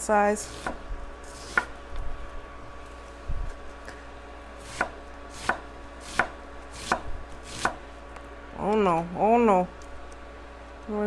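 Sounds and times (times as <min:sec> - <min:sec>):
knife slicing onion: 0:00.4 - 0:01.8, 0:04.6 - 0:07.8.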